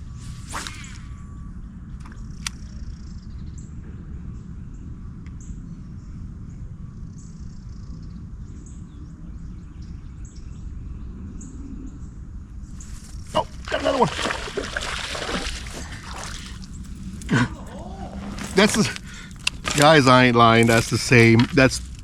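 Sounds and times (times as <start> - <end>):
low rumble: 10.9 - 22.0
birds chirping: 12.7 - 21.8.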